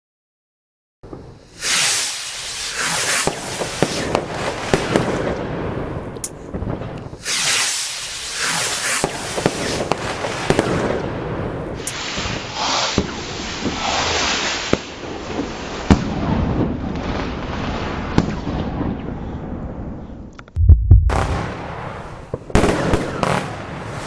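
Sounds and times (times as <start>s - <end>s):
firework crackling: 1.1s - 18.1s
firework bangs: 1.1s - 19.0s, 20.9s - 24.0s
rockets hissing in flight: 1.3s - 4.8s, 7.1s - 10.6s, 11.8s - 14.8s.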